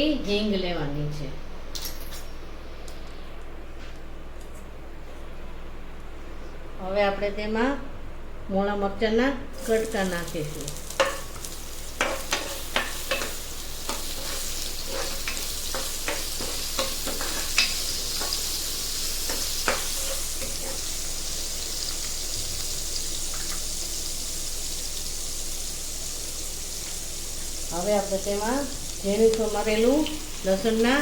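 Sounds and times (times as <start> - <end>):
chillies sizzling in hot oil: 9.5 - 31.0
spoon scraping a pan: 12.0 - 18.4, 19.3 - 21.0.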